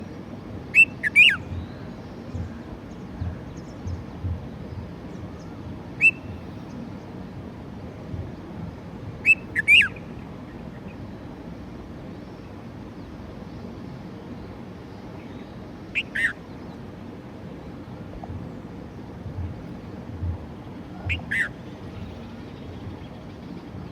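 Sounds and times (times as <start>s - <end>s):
bulbuls calling: 0.7s - 6.8s, 9.2s - 11.0s, 15.1s - 23.9s.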